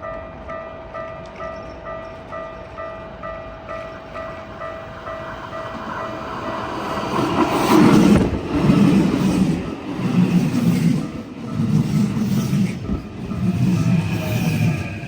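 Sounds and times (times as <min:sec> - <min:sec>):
level-crossing bell clanging: 0:00.0 - 0:07.5
train rushing past: 0:01.6 - 0:15.0.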